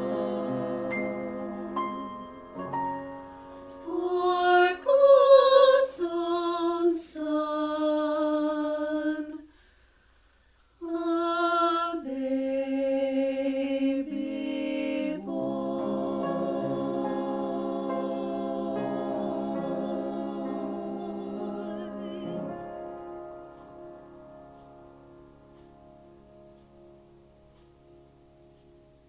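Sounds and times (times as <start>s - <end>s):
choir singing sacred piece: 0.0s - 9.5s, 10.8s - 24.2s.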